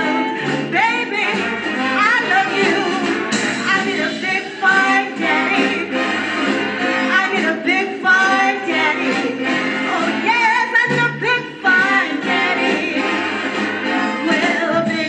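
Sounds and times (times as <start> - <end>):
swing big band playing: 0.0 - 15.0.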